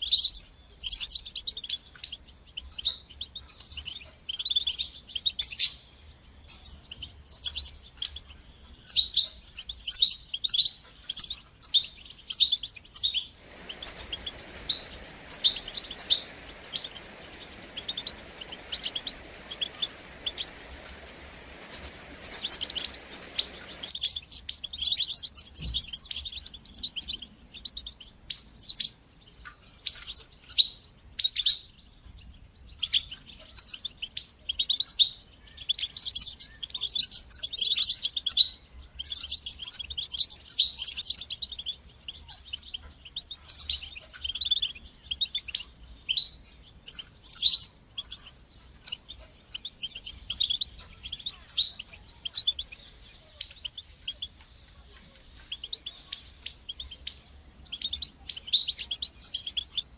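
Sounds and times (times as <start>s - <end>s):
finch twittering and trilling: 0.0s - 59.9s
steady hiss: 13.3s - 27.4s.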